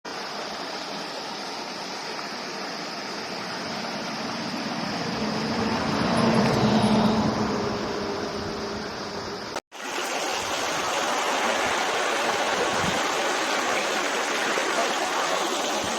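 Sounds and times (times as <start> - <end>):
mountain stream rushing: 0.1 - 6.1, 9.3 - 15.9.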